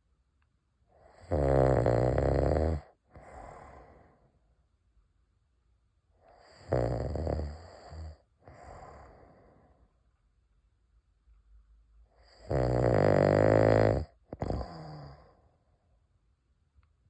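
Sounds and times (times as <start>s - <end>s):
man snoring loudly: 1.1s - 3.0s, 6.4s - 9.0s, 12.3s - 15.2s.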